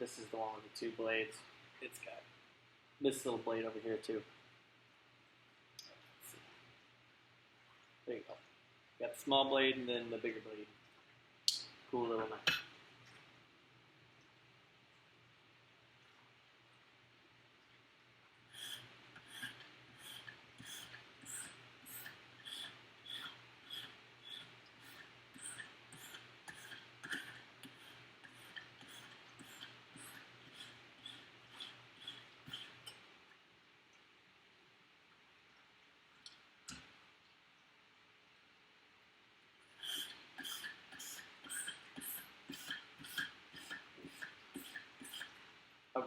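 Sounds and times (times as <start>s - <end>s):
sharpening stone scraping blade: 18.6s - 33.0s, 39.8s - 45.4s.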